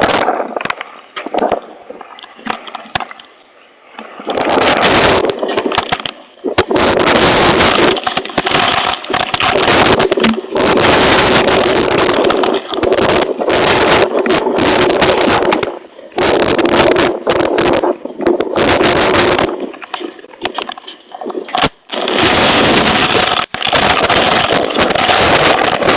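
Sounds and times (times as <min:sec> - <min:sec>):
hail pelting a cover: 0:06.6 - 0:15.6, 0:21.6 - 0:25.9.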